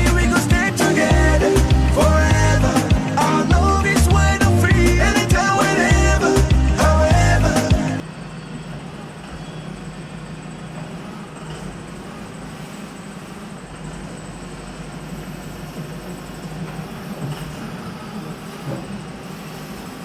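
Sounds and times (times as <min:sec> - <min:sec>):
backhoe engine rumbling: 0:00.0 - 0:08.0
song: 0:00.0 - 0:08.0.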